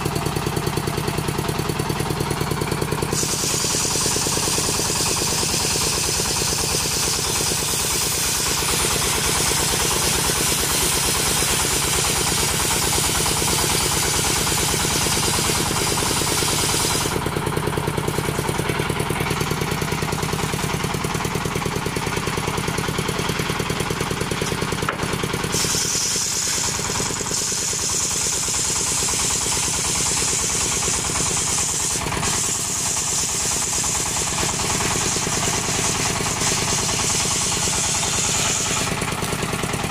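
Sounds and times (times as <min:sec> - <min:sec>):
chainsaw cutting wood: 0:02.7 - 0:17.2, 0:23.8 - 0:39.9.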